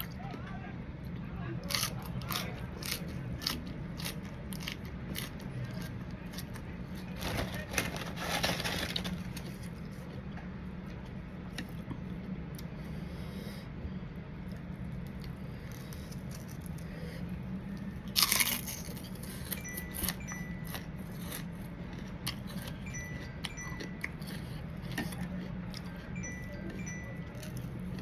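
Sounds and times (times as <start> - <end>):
steady low hum: 0.0 - 28.0
loud crunch of eating: 1.6 - 10.2, 14.5 - 28.0
high chime pings: 22.8 - 24.2, 26.1 - 27.7.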